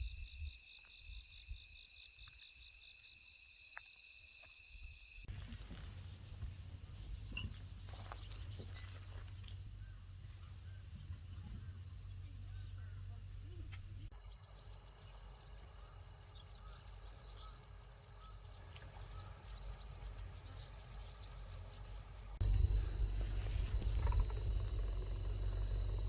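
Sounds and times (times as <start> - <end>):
insects chirping: 0.0 - 26.0
low steady hum: 5.7 - 26.0.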